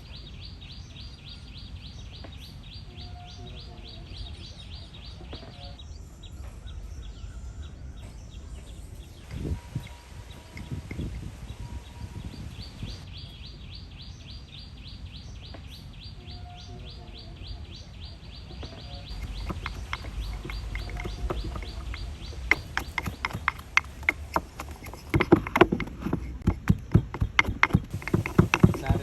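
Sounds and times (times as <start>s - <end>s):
bird chirping rapidly: 0.0s - 29.0s
sharp clicks and knocks: 18.6s - 29.0s.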